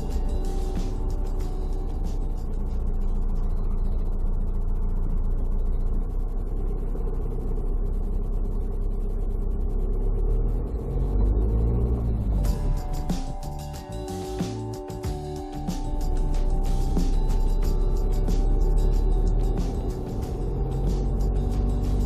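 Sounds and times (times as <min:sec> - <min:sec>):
car driving rumble: 0:00.0 - 0:22.0
quiet background music: 0:00.0 - 0:22.0.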